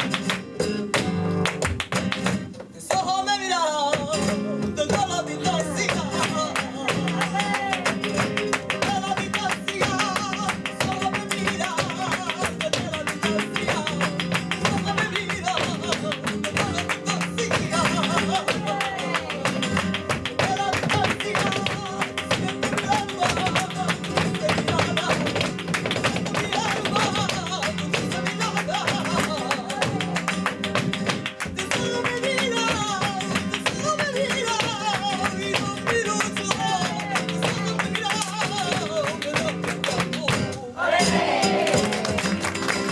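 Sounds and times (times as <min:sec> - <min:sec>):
flamenco guitar: 0:00.0 - 0:42.9
person singing: 0:02.7 - 0:30.3.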